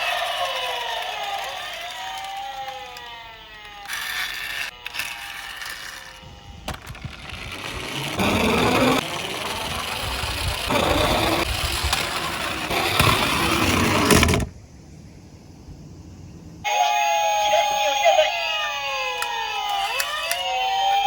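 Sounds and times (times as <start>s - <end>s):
toy cars rattling along track: 0.0s - 14.4s.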